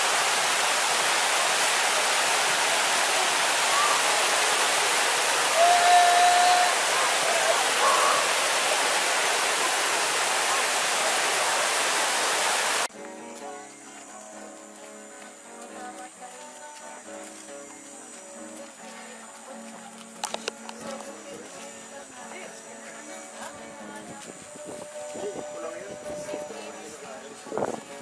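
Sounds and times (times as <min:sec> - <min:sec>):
waterfall rushing: 0:00.0 - 0:12.9
person calling: 0:05.4 - 0:08.6.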